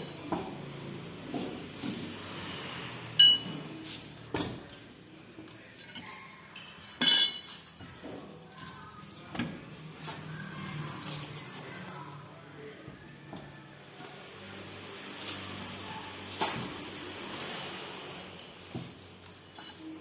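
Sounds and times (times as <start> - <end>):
metal tools clinking: 3.2 - 3.6, 5.8 - 7.8.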